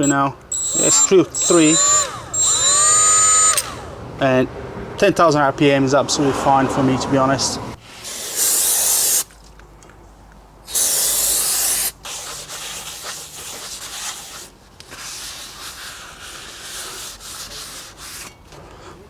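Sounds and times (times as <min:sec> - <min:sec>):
aerosol spray bursts: 0:08.0 - 0:09.3, 0:10.7 - 0:12.0
rubbing and wiping: 0:10.8 - 0:18.4.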